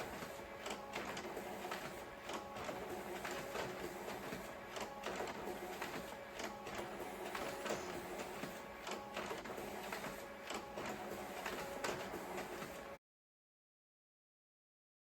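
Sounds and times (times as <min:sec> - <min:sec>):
photocopier clicks and clatter: 0:00.0 - 0:12.9
photocopier whirring: 0:00.0 - 0:13.0.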